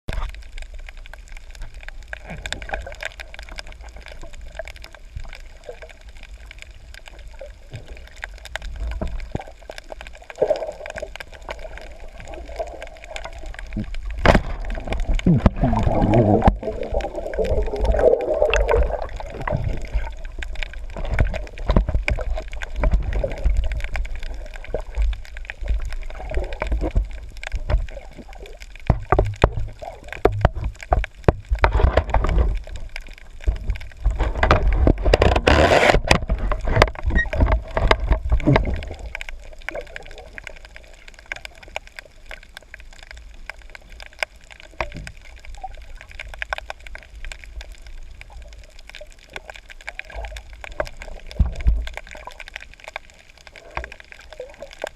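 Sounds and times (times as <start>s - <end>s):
water sloshing and gurgling: 0.0s - 54.9s
water rush: 0.1s - 54.9s.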